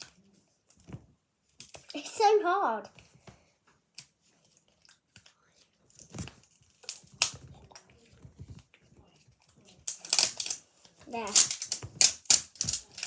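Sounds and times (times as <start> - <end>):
sharp packaging cracks: 6.7 - 7.5, 9.9 - 13.0
packaging rustling: 9.8 - 13.0.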